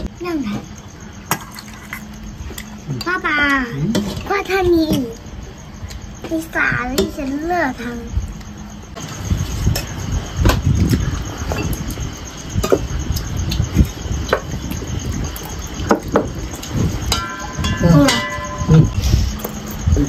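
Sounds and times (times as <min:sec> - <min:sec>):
ringing clink: 0:17.1 - 0:18.9.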